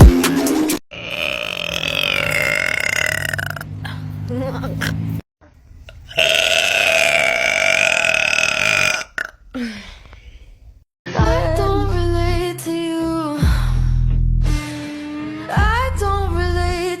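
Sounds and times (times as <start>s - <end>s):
person burping: 0.9s - 3.8s, 6.1s - 9.4s.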